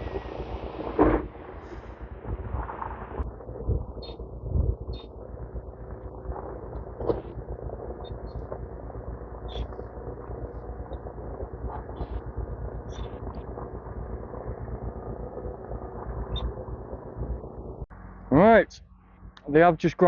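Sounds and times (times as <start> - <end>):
wind on microphone: 0.0 - 8.3
diesel engines humming: 0.0 - 20.0.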